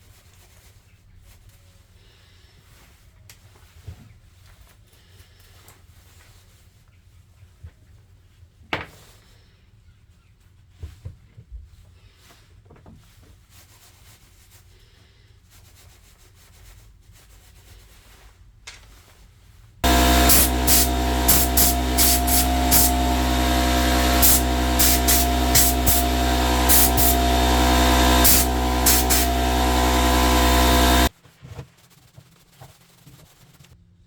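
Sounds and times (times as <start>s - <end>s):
angle grinder running: 19.8s - 31.1s.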